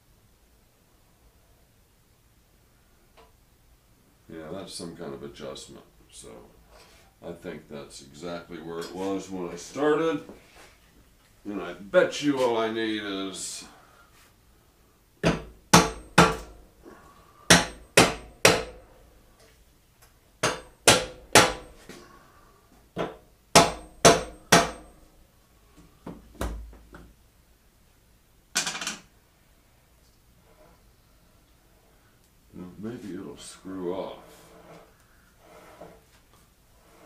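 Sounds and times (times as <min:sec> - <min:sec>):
hammer striking metal: 0:15.2 - 0:16.6, 0:17.5 - 0:18.8, 0:20.4 - 0:21.8, 0:23.0 - 0:25.0.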